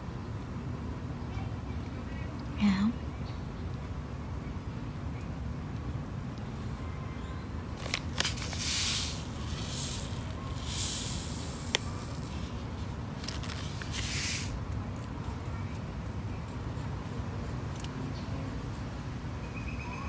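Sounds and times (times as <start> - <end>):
sand scraping: 7.8 - 14.6.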